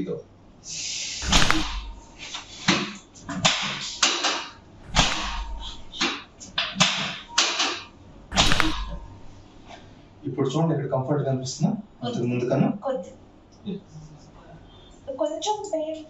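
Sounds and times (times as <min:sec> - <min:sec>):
drop table sharp knocks: 0:01.2 - 0:02.0, 0:03.4 - 0:09.1.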